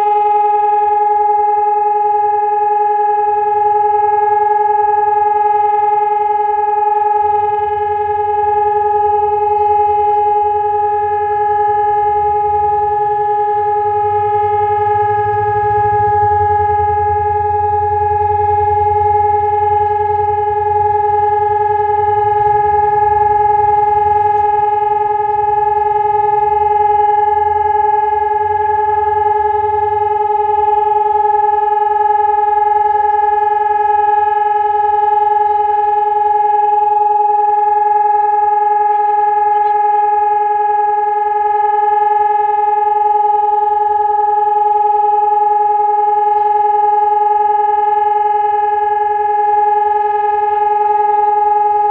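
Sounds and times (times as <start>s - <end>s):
electronic siren steady tone: 0.0s - 51.9s
low rumble: 7.1s - 33.6s.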